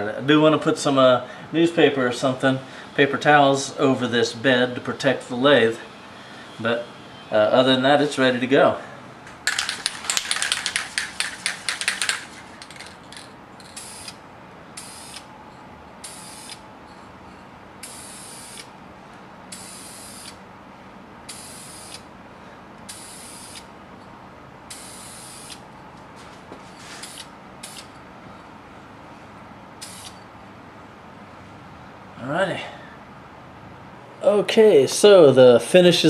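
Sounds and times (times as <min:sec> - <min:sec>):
aerosol can ball rattling: 0:09.4 - 0:13.8.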